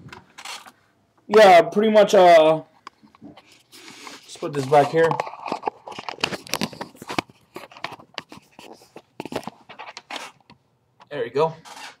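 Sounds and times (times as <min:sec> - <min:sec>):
handling clicks knocks and scrapes: 0:02.8 - 0:12.0.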